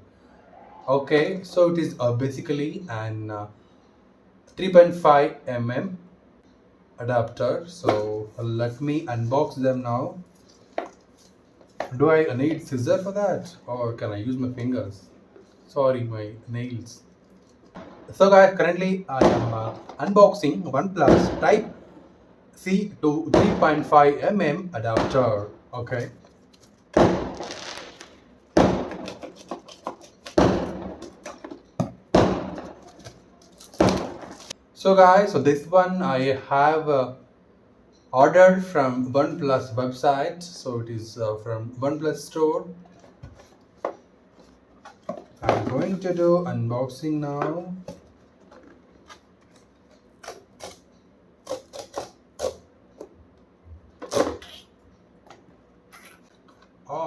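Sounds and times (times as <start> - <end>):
crackles of handling packaging: 10.2 - 12.1, 17.1 - 17.9, 25.8 - 34.6.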